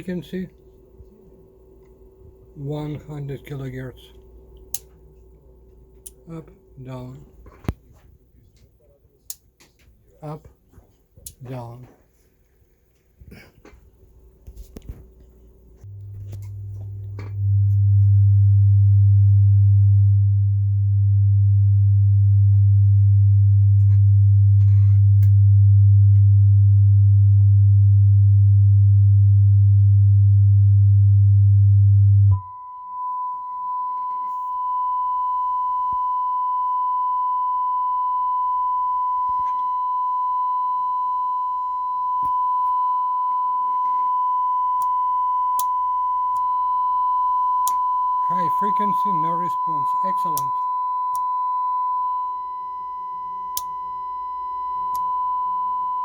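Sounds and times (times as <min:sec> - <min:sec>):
steady low test tone: 0:00.0 - 0:08.0, 0:15.8 - 0:56.0
steady high test tone: 0:32.4 - 0:56.0.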